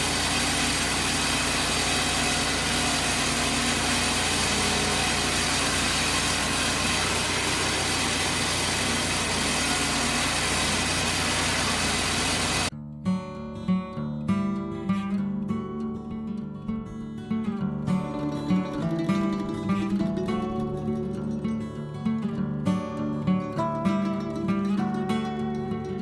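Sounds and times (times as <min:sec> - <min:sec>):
engine running steadily: 0:00.0 - 0:12.7.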